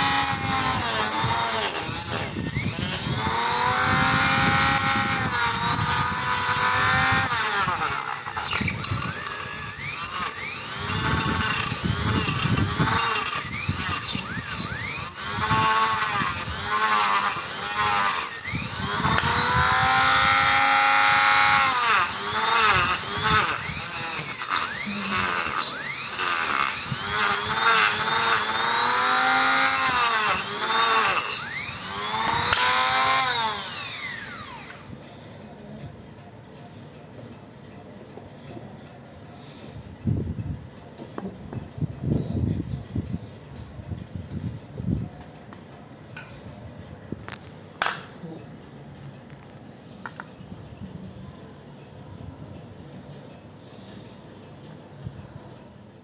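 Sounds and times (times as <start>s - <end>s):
rotary tool saw blade whining: 0.0s - 35.0s.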